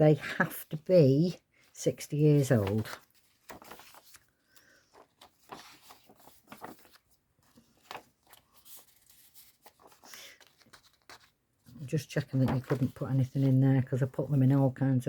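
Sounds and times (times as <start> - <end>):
paper pages rustling: 2.2 - 14.6.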